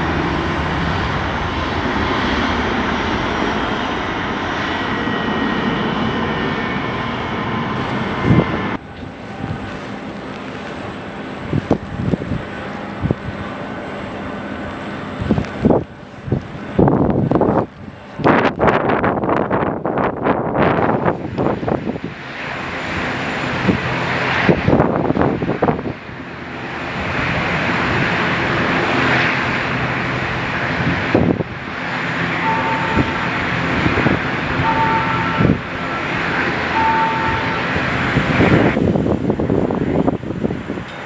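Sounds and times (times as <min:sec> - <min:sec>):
airliner engines rumbling: 0:00.0 - 0:41.0.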